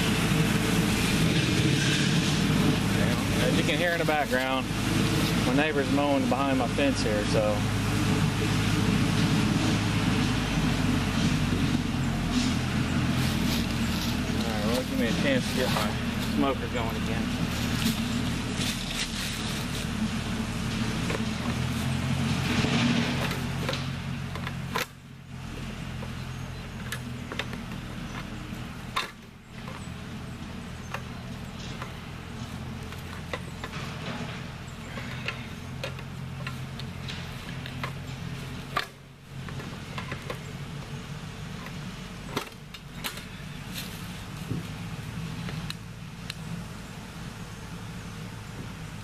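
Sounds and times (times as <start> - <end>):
lawn mower engine running: 0.0 - 49.0
handling clicks and knocks: 22.5 - 44.8.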